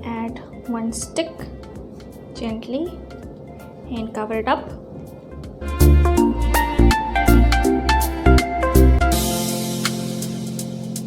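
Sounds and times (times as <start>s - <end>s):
upbeat plucked melody with bass beat: 5.6s - 11.0s.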